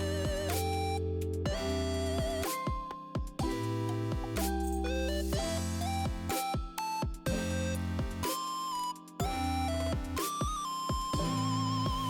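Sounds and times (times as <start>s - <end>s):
light electronic synth tune: 0.0s - 12.0s.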